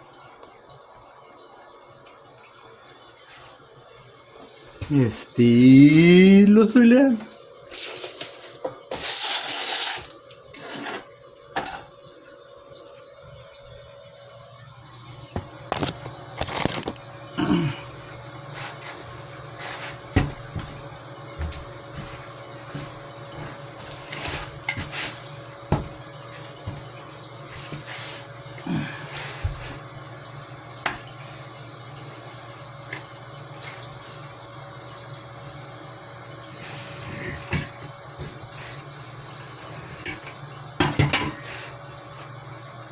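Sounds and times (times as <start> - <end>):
tap water running into sink: 11.3 - 17.2, 17.9 - 42.6.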